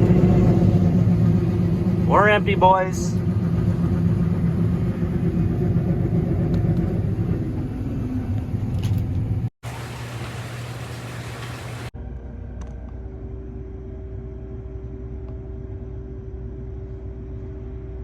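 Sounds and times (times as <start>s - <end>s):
combine harvester droning: 0.0s - 12.4s.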